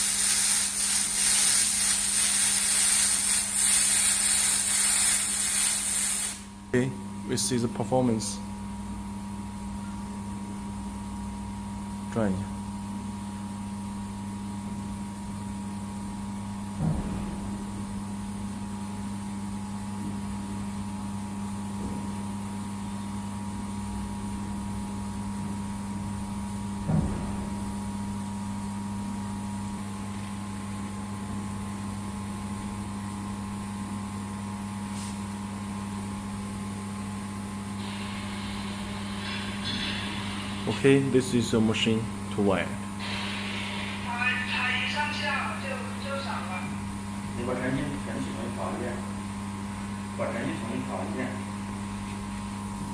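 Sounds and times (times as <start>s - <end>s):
hiss: 0.0s - 6.5s, 37.8s - 40.7s, 43.0s - 44.2s
welding machine electrical hum: 0.0s - 52.9s.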